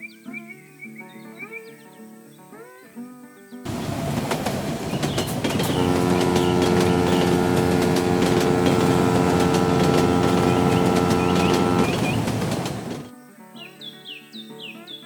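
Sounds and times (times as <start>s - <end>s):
machine rumble with droning hum: 5.7s - 13.0s.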